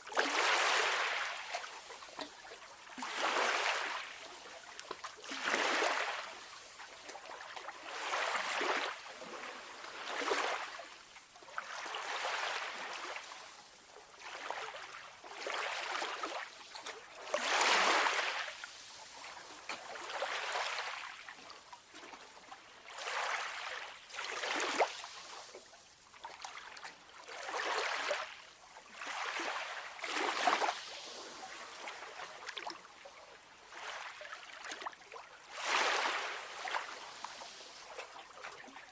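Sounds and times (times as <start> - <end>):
small waves washing in: 0.2 - 2.2, 3.0 - 4.3, 5.2 - 6.6, 29.0 - 32.4, 35.5 - 38.8.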